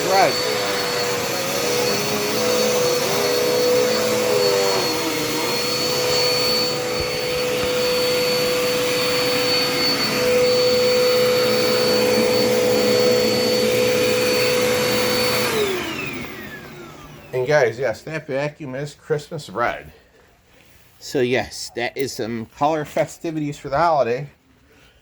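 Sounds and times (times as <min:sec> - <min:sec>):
vacuum cleaner running: 0:00.0 - 0:17.8.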